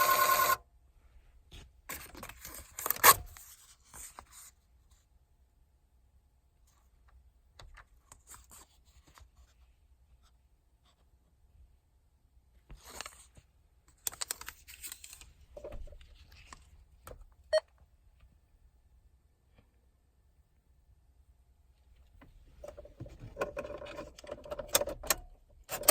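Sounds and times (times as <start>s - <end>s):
handling clicks and rustling: 12.7s - 17.5s, 21.9s - 25.9s.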